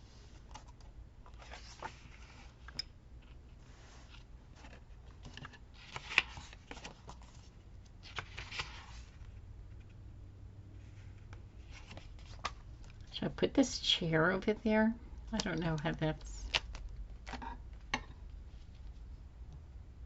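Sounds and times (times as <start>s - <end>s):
paper rustling: 0.3s - 2.6s, 3.9s - 9.4s, 10.9s - 13.0s.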